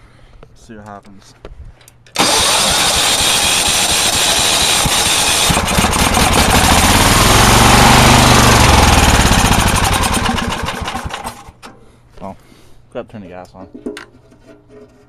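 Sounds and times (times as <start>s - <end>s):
small engine running: 2.2s - 11.5s
electric starter cranking: 2.2s - 11.6s.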